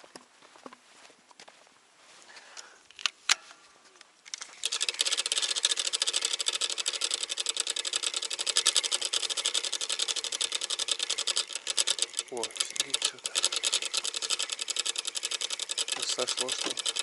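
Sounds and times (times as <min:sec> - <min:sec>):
sharp clicks: 0:04.2 - 0:17.0
fishing reel ticking: 0:04.3 - 0:17.0.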